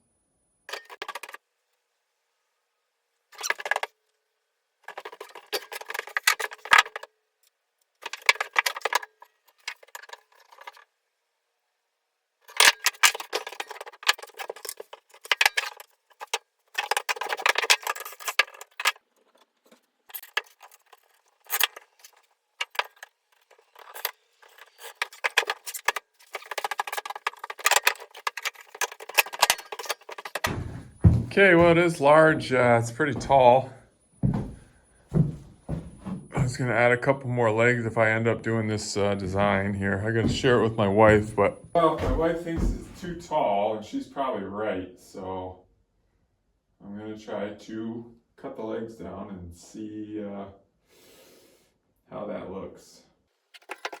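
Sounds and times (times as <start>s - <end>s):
metal brackets and boards clattering: 0.7s - 1.4s, 3.4s - 3.9s, 4.9s - 7.1s, 8.0s - 10.8s, 12.5s - 32.0s, 40.2s - 43.2s, 53.6s - 54.0s.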